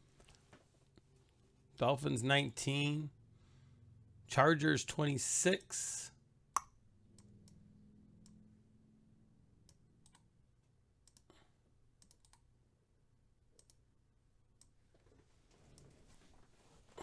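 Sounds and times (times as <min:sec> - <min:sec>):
faint clicks: 0:11.0 - 0:11.3, 0:13.6 - 0:13.8.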